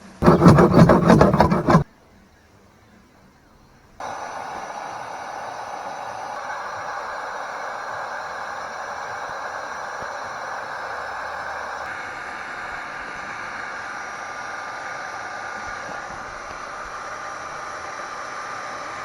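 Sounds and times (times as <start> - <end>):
heat gun blowing hot air: 4.0 - 11.5
thin steady whine: 4.0 - 11.9.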